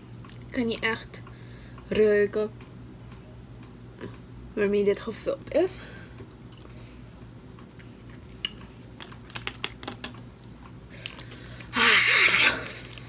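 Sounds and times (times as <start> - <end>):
food packaging clicks and taps: 8.5 - 10.3.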